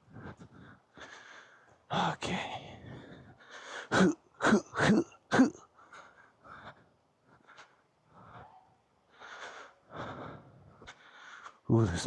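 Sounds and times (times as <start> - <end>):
man breathing hard in huffs: 0.0 - 1.8, 2.4 - 4.0, 5.7 - 11.7.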